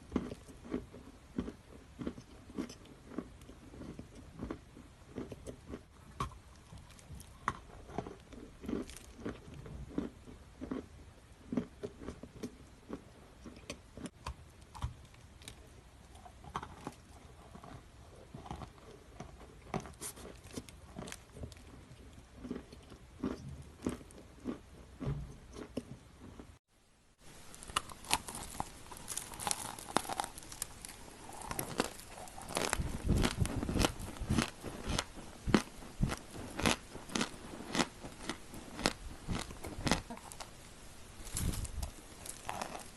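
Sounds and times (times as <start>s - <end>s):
cookie crunching: 0.0s - 24.6s, 27.4s - 42.9s.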